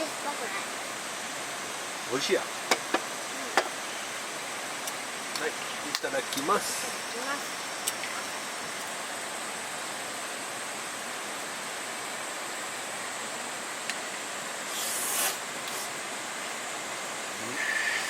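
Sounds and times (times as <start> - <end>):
rushing running water: 0.0 - 18.0
short hiss: 14.6 - 16.0, 17.4 - 18.0.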